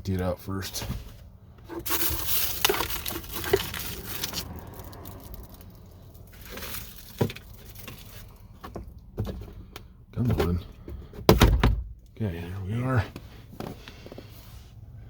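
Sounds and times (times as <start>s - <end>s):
rustling of items in glove box: 0.4s - 12.1s.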